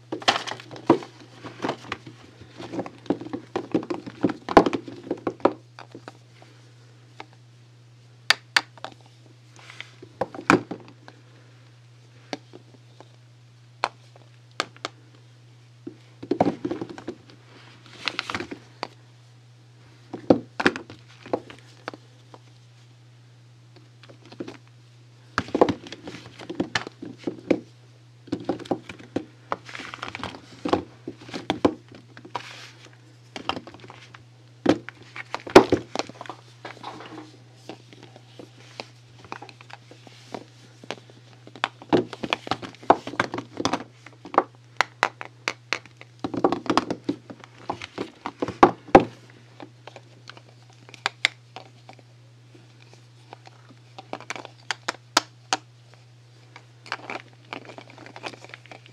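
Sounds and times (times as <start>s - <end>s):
soap bars tapping and thunking: 0.1s - 6.1s, 15.8s - 17.2s, 25.4s - 27.6s, 28.3s - 32.3s, 40.3s - 49.2s
packaging crinkling: 52.8s - 55.0s, 56.4s - 58.9s.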